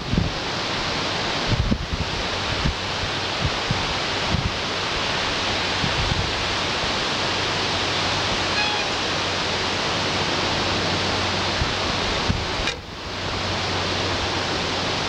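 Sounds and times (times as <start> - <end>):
faint short tone: 8.5 - 9.0.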